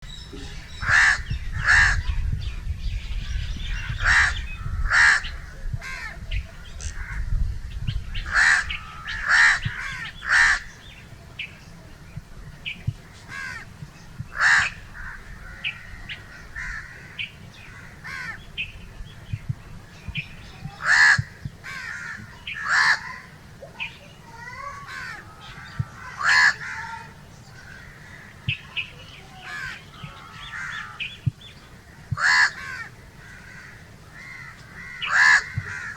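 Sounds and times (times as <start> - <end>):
crows cawing: 0.8 - 2.1, 3.8 - 6.2, 8.2 - 10.7, 13.3 - 13.7, 14.3 - 18.5, 20.8 - 23.3, 24.3 - 28.7, 29.3 - 31.2, 31.8 - 35.9.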